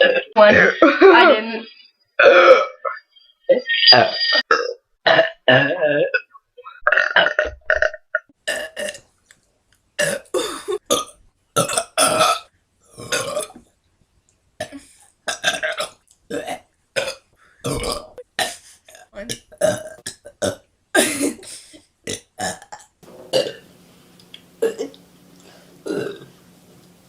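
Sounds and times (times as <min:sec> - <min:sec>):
girl burping: 0:02.2 - 0:03.0, 0:04.4 - 0:09.0, 0:10.0 - 0:13.6, 0:14.6 - 0:18.3, 0:19.1 - 0:21.4, 0:23.3 - 0:23.6, 0:24.6 - 0:25.0, 0:25.8 - 0:26.3.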